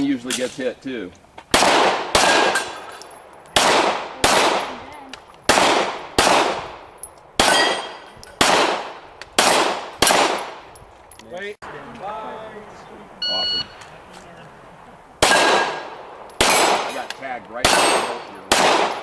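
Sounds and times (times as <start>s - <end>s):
pistol shots echoing: 1.5s - 4.8s, 5.5s - 10.7s, 15.2s - 19.0s.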